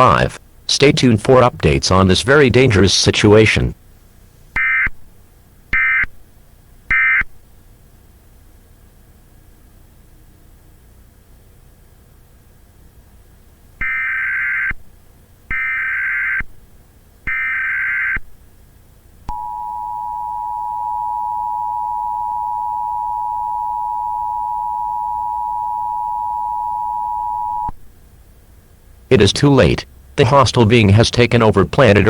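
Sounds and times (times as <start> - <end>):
two-tone attention signal: 19.3 - 27.8.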